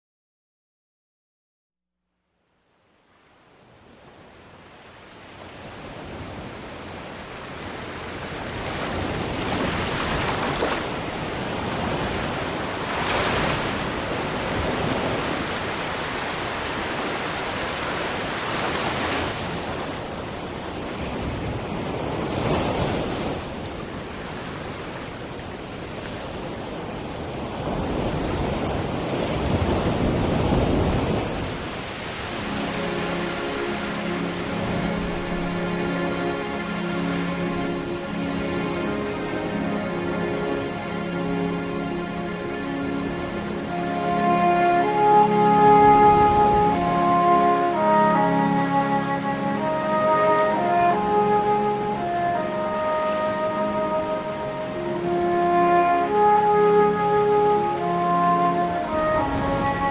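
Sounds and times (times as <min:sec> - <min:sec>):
sea waves breaking: 0:03.5 - 0:59.9.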